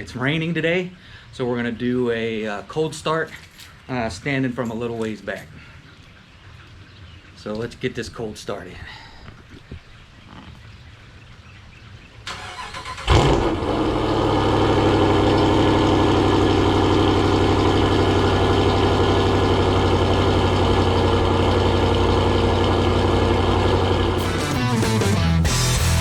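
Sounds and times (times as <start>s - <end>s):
car engine idling: 12.3s - 26.0s.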